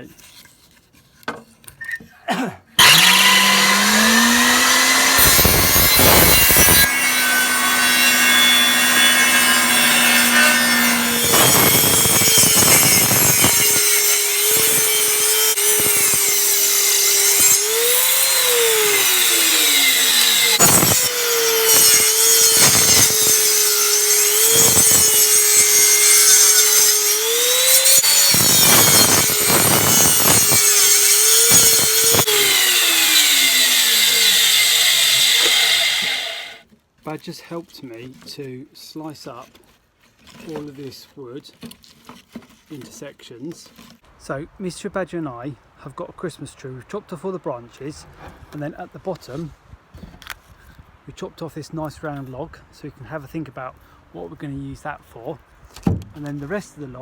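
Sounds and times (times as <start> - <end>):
table saw cutting wood: 2.8 - 36.6.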